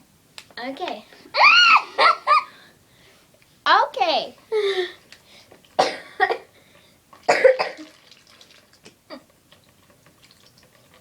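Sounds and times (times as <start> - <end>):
person coughing: 5.8 - 6.5, 7.3 - 7.9.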